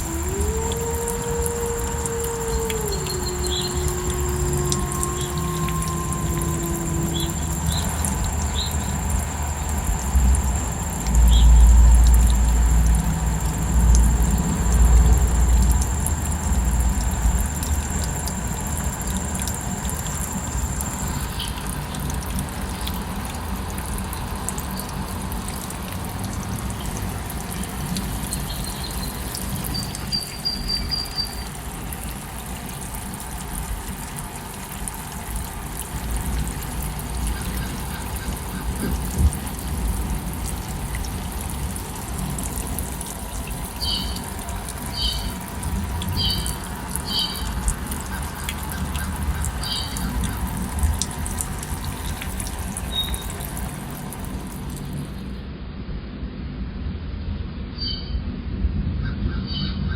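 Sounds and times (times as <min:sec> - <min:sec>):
deep low rumble: 0:00.0 - 0:21.7
cricket trill: 0:00.0 - 0:23.0, 0:25.6 - 0:54.9
falling water running: 0:00.0 - 0:55.4.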